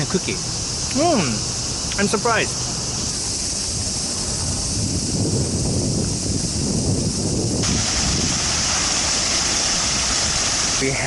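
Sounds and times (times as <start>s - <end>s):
high-pitched insect buzzing: 0.0s - 7.6s
wind buffeting microphone: 2.7s - 11.0s.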